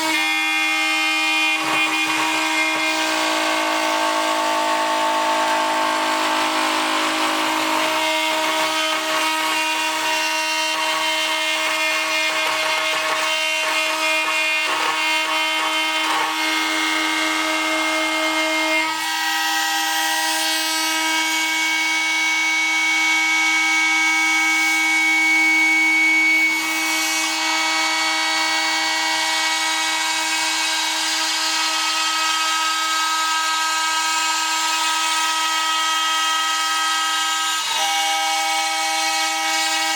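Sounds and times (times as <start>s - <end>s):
cnc spindle whine: 0.0s - 39.9s
metal cutting noise: 0.0s - 39.9s.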